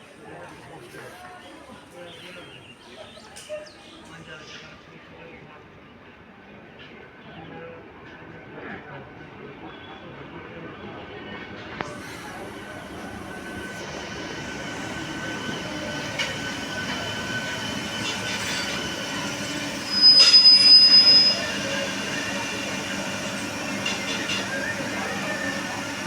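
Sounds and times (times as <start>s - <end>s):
train running along track: 4.2s - 26.0s
loud high piercing tone: 11.9s - 26.0s
high-pitched wheel squeal: 13.5s - 26.0s.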